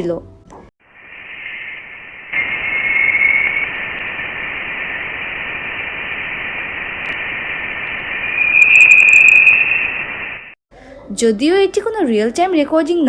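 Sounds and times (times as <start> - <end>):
radio-like hiss: 0.8 - 10.6
whistling tone: 1.1 - 6.0, 6.8 - 10.6.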